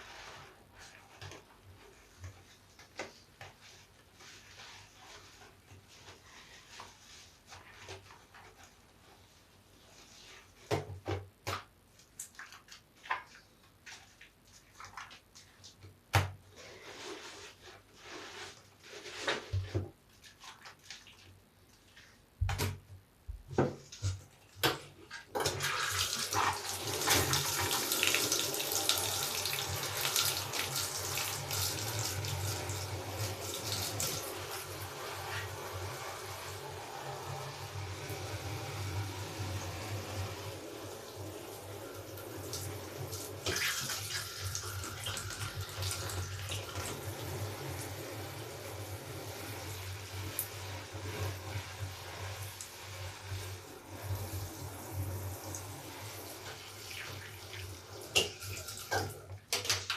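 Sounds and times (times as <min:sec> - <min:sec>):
wet sponge squelching: 0:00.0 - 0:10.7, 0:12.2 - 0:15.8, 0:16.5 - 0:22.2.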